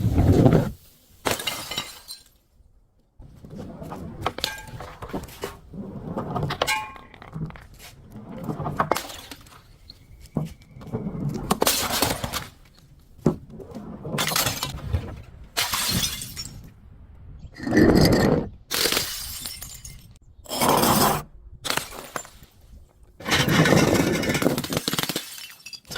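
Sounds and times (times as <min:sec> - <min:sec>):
glass bottles shattering: 0:01.2 - 0:02.4, 0:08.9 - 0:09.8, 0:15.6 - 0:16.7, 0:18.8 - 0:20.2, 0:23.4 - 0:25.9
glass shards clinking: 0:01.3 - 0:02.4, 0:24.9 - 0:25.9.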